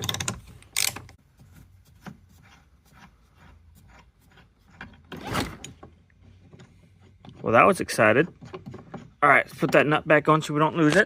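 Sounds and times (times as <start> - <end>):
tools clicking and rubbing: 0.0 - 1.2.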